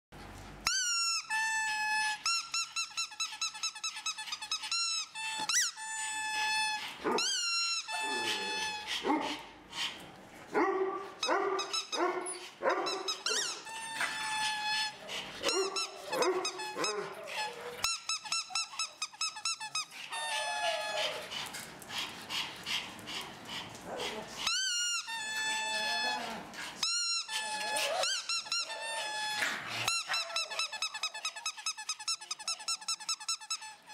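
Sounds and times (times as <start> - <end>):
dogs yelping and whining: 0.7 - 33.9
dogs yapping and barking: 6.8 - 24.6, 25.8 - 33.0.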